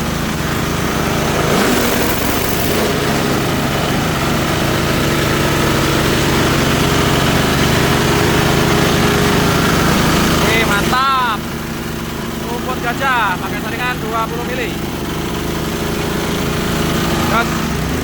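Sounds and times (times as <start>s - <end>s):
chopper grinder machine noise: 0.0s - 18.0s
diesel engine running: 0.0s - 18.0s.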